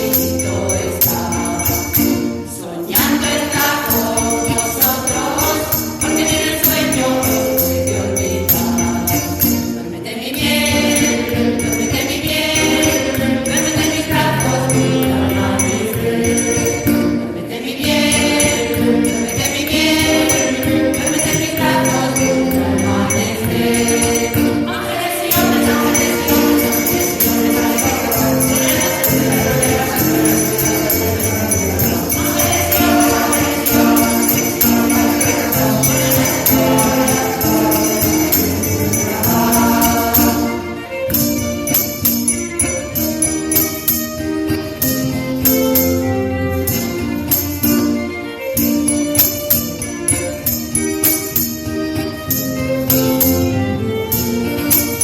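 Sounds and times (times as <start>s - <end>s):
choir singing carol: 0.0s - 44.0s
jingling percussion: 0.0s - 55.0s.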